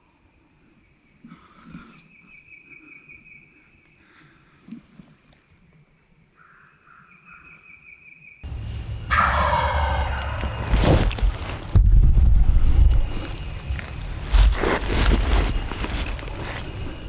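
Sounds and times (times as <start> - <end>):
soft low bird calls: 6.4 - 17.0
loud rushing noise: 8.4 - 14.8
bird trilling: 8.4 - 17.0.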